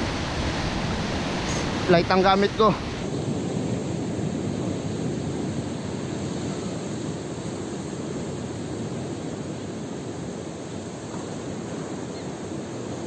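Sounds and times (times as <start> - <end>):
sea surf: 0.0 - 13.0
wind: 0.0 - 13.0.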